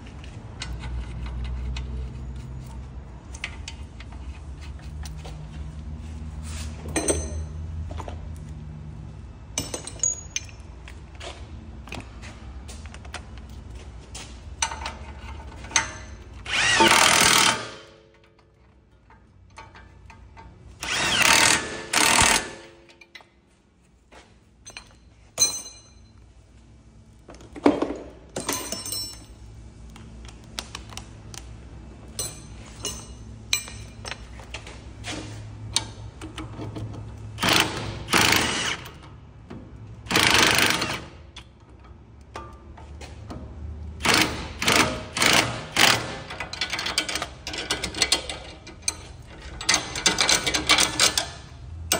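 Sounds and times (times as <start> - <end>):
clinks of tools and metal parts: 6.5 - 8.6, 9.5 - 26.5, 27.3 - 31.4, 32.0 - 51.9
impact wrench bursts: 15.8 - 18.0, 20.7 - 22.8, 37.4 - 39.0, 40.0 - 41.2, 44.0 - 47.9.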